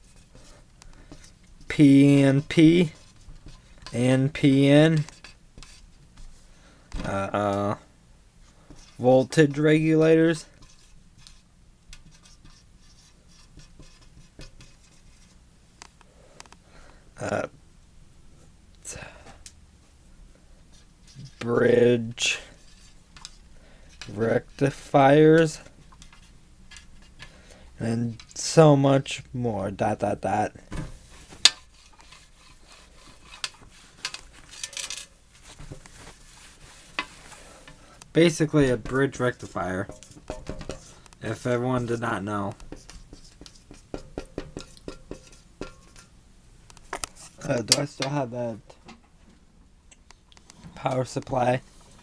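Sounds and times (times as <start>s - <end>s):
rustling: 30.6s - 43.8s.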